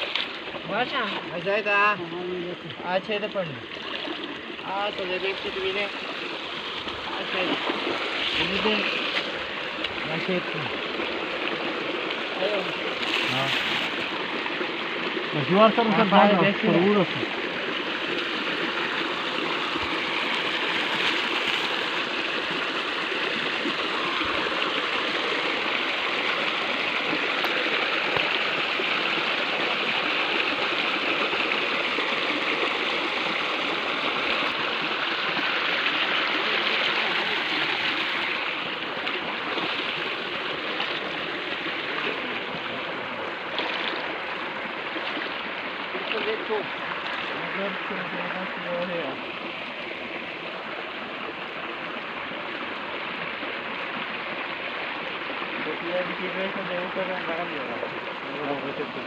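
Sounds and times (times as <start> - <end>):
stream water rushing and gurgling: 0.0 - 59.0.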